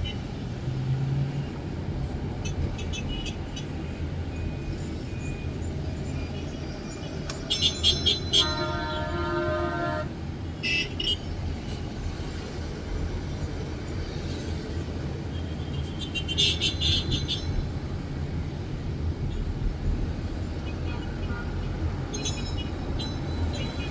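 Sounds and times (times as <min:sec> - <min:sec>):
traffic rumble: 0:00.0 - 0:23.9
car horn: 0:07.4 - 0:11.3, 0:15.4 - 0:17.6.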